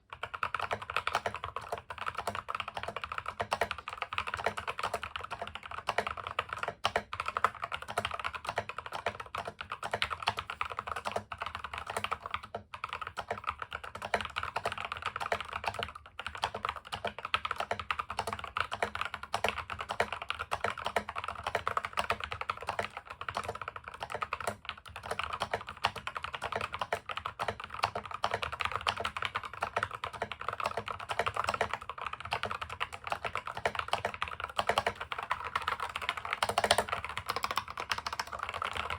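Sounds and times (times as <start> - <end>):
typing on mechanical keyboard: 0.0 - 38.9.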